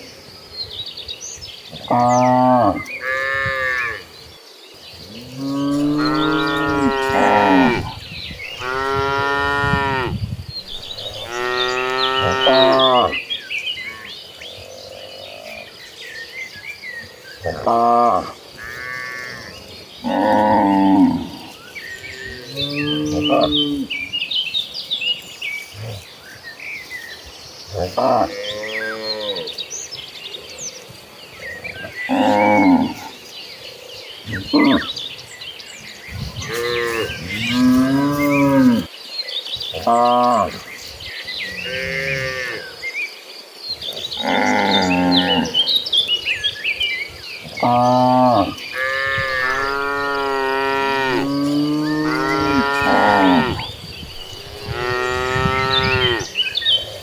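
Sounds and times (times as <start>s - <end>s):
small birds chirping: 0.0s - 57.0s
cows mooing: 1.8s - 4.1s, 5.1s - 8.0s, 8.6s - 13.2s, 17.4s - 24.0s, 31.8s - 33.1s, 36.4s - 38.9s, 41.6s - 42.6s, 44.2s - 45.7s, 47.5s - 56.4s
cattle mooing: 5.4s - 8.0s, 8.6s - 10.2s, 11.0s - 13.2s, 47.6s - 53.7s, 54.4s - 56.3s.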